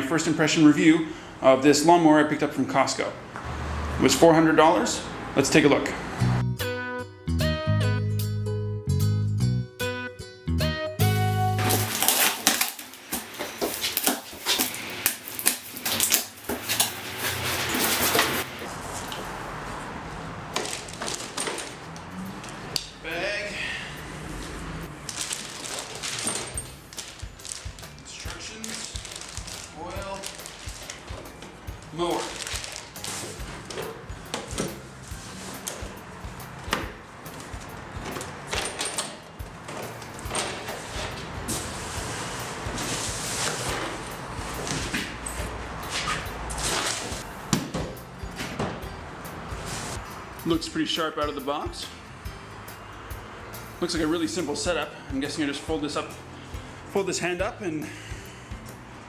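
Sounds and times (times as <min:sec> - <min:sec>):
cardboard box crackling rustles: 0:11.6 - 0:18.7, 0:20.6 - 0:21.8, 0:25.0 - 0:36.0.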